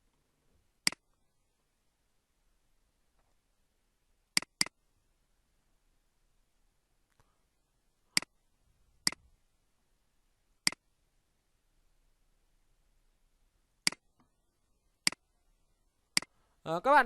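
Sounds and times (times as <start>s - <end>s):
computer mouse clicks: 4.4s - 4.8s, 13.8s - 14.3s, 15.0s - 15.2s, 16.2s - 16.4s.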